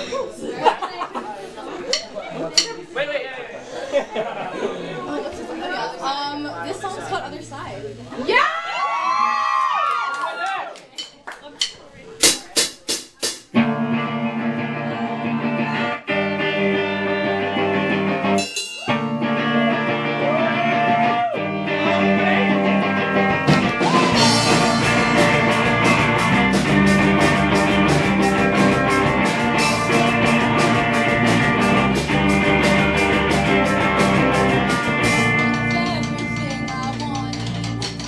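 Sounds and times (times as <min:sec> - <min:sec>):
steady drum beat: 0:10.9 - 0:14.5, 0:17.3 - 0:38.0
rock band playing: 0:11.1 - 0:38.0
electric guitar chords: 0:13.5 - 0:38.0.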